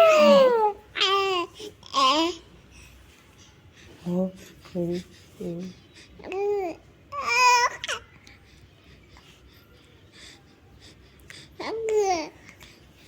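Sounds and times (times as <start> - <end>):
baby squealing and cooing: 0.0 - 2.3.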